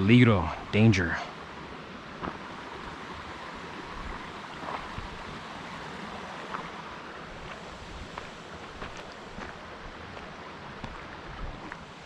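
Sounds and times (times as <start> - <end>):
river rushing: 0.0 - 12.0
wind rumble on microphone: 3.8 - 5.5, 7.4 - 12.0.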